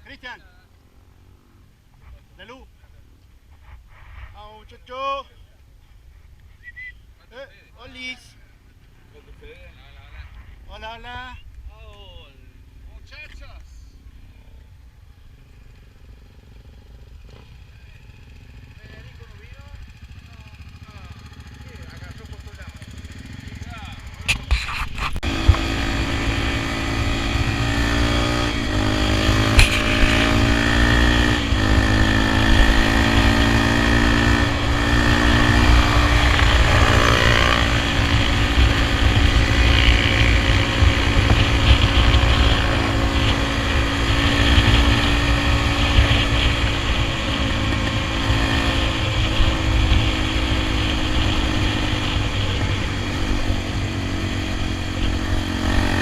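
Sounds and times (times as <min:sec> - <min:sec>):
motorcycle engine revving: 0:15.0 - 0:56.0.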